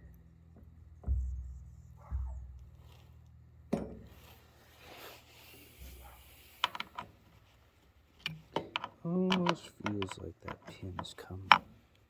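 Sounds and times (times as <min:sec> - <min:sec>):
metallic clicks handling chainsaw: 0:06.6 - 0:07.1, 0:08.2 - 0:12.0.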